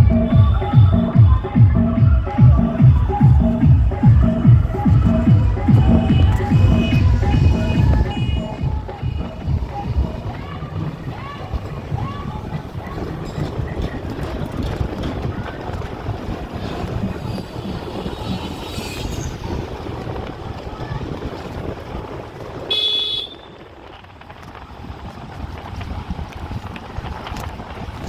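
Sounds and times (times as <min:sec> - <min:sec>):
road traffic rumble: 0:00.0 - 0:28.0
vehicle horn: 0:05.6 - 0:09.5, 0:22.7 - 0:23.7.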